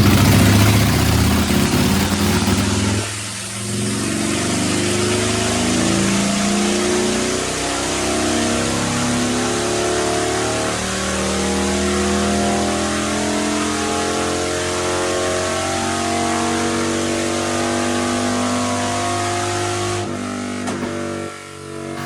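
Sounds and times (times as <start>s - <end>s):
motorcycle engine revving: 0.0s - 5.3s.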